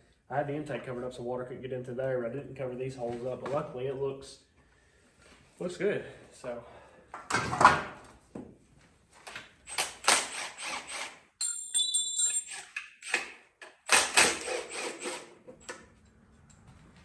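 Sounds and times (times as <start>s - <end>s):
metal tools clinking: 11.4s - 13.0s.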